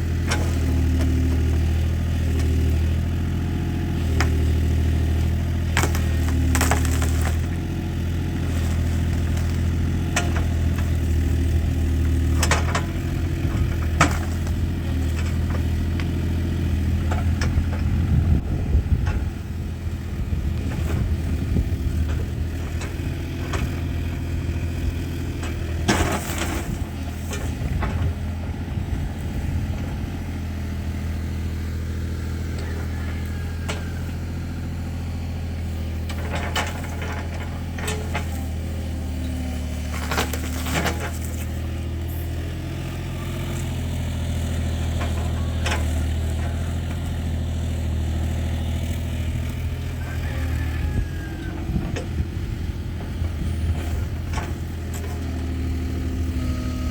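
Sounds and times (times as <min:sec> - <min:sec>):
engine idling: 0:00.0 - 0:56.9.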